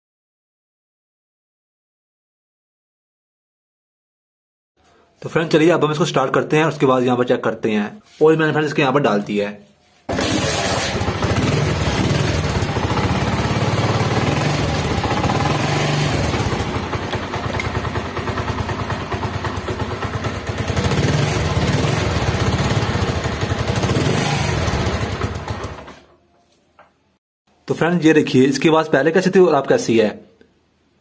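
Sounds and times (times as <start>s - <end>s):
exhaust noise: 10.1s - 25.9s
motorcycle engine running: 10.1s - 26.0s.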